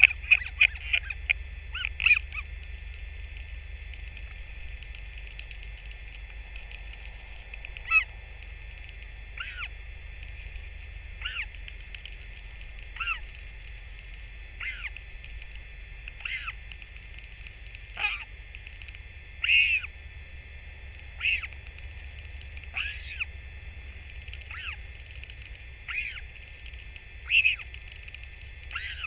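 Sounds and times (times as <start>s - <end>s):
low rumble: 0.0s - 29.0s
steady high hum: 0.0s - 29.0s
bird call falling in pitch: 11.2s - 11.5s, 14.6s - 15.0s, 16.2s - 16.6s, 21.2s - 21.5s, 27.2s - 27.6s.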